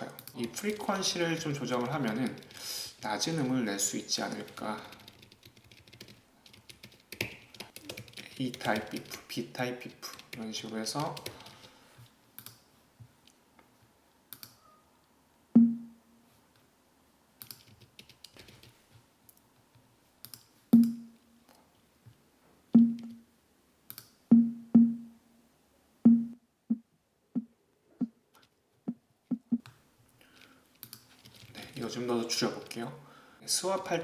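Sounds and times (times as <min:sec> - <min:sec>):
short low electronic beeps: 0:15.6 - 0:16.0, 0:20.8 - 0:21.2, 0:22.8 - 0:23.2, 0:24.3 - 0:25.2, 0:26.1 - 0:26.8
keyboard typing clicks: 0:20.2 - 0:21.1, 0:22.8 - 0:23.2.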